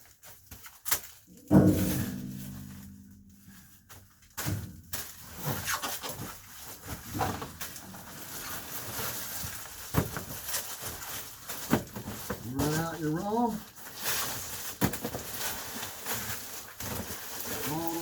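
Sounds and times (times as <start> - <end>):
foil insulation crinkling: 0.0 - 18.0
sharp knocks: 1.4 - 3.6.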